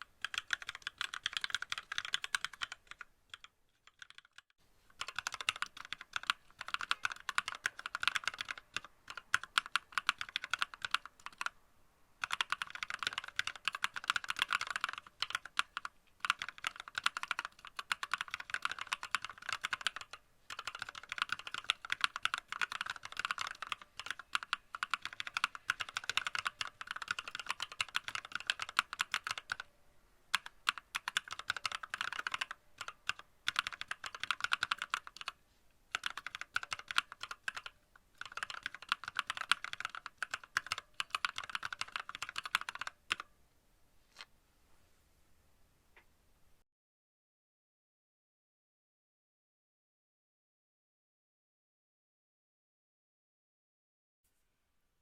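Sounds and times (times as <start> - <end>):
mechanical keyboard typing: 0.0 - 11.6, 12.2 - 29.7, 30.3 - 43.3.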